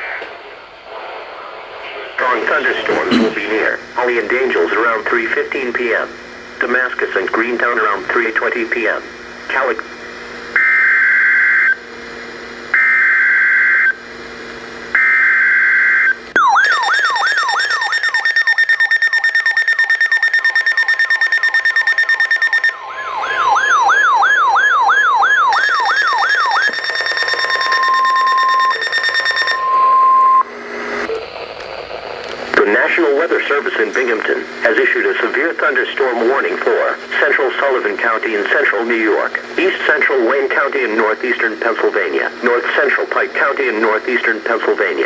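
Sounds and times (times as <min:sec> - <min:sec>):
steady warning tone: 0:15.0 - 0:32.1
warbling alarm sweeps: 0:16.4 - 0:30.5.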